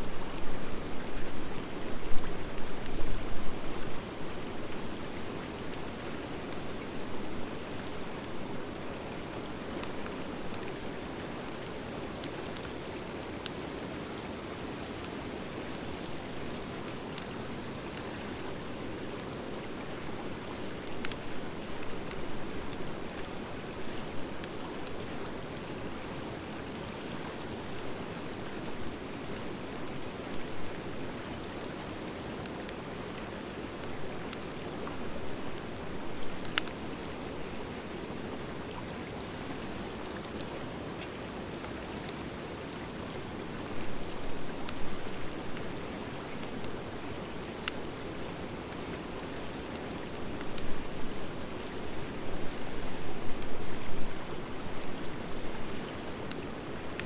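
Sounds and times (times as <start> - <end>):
wood fire burning: 7.6 - 57.0
fire crackling pops: 9.6 - 14.0, 16.9 - 30.8, 32.0 - 39.1, 43.2 - 57.0.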